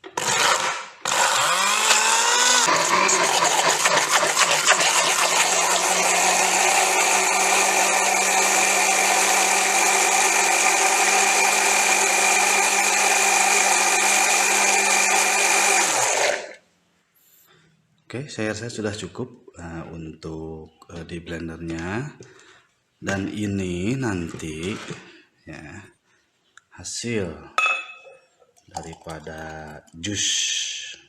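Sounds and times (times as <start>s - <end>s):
blender motor whining: 0.0s - 16.6s.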